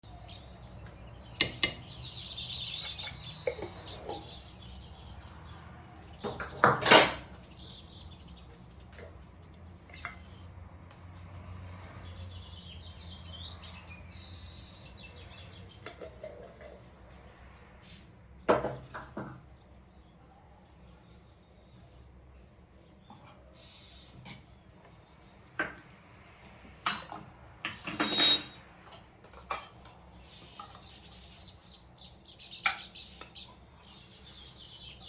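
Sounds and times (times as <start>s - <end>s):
birds chirping: 0.0s - 35.0s
dishes and utensils clinking: 26.9s - 30.0s.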